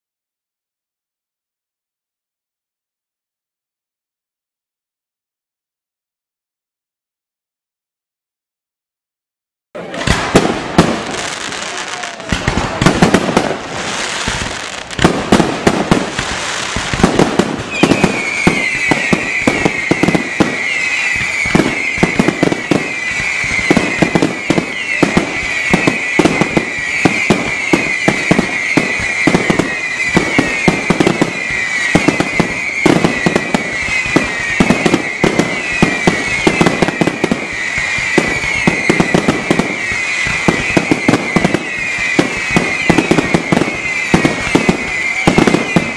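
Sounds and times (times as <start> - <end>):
fireworks bursts and bangs: 9.8 - 45.9
shrill whistle: 17.6 - 45.9.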